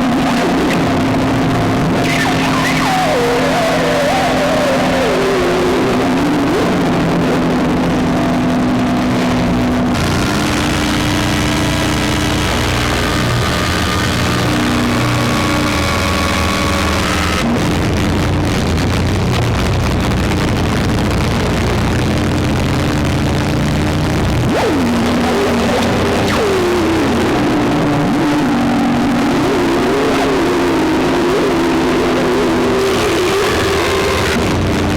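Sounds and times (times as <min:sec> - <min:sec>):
synthesizer drone tones: 0:00.0 - 0:17.5
grainy electronic noise: 0:00.0 - 0:34.9.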